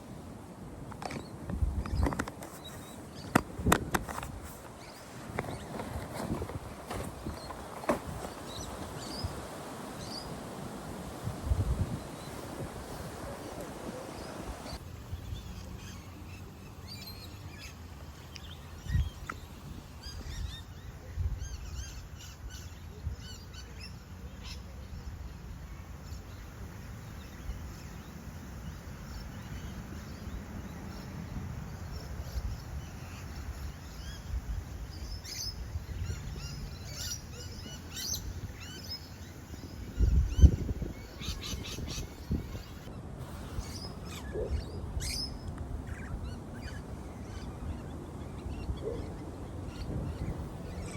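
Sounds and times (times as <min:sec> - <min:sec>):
wind rumble on microphone: 0:00.0 - 0:17.8, 0:18.5 - 0:23.6, 0:24.6 - 0:50.9
small birds chirping: 0:11.9 - 0:50.9.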